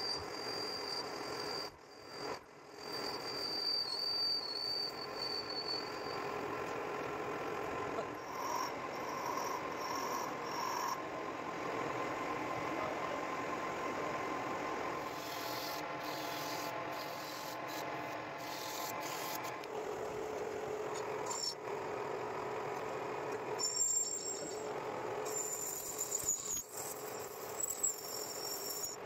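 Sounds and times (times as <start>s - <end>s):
lathe scraping metal: 15.0s - 19.5s.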